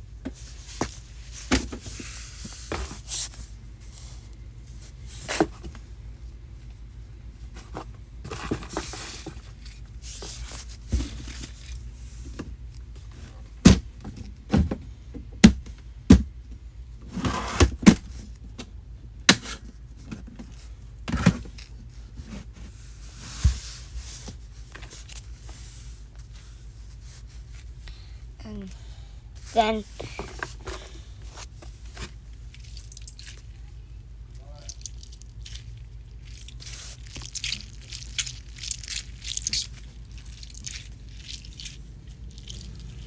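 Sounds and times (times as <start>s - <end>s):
boxes knocking and clattering: 0.2s - 3.1s, 7.6s - 9.5s
rustling of packing: 0.2s - 5.8s, 7.4s - 12.4s, 29.4s - 33.7s, 34.7s - 43.0s.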